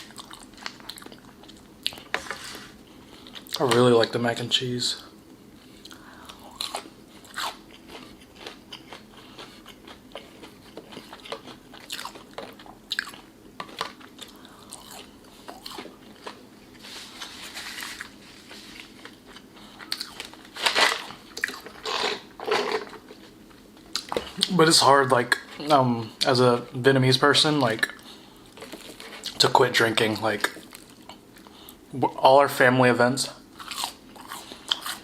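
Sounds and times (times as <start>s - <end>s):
person chewing food: 0.0s - 3.6s, 5.5s - 22.3s, 22.9s - 24.6s, 27.8s - 29.4s, 30.4s - 31.9s, 33.5s - 35.0s.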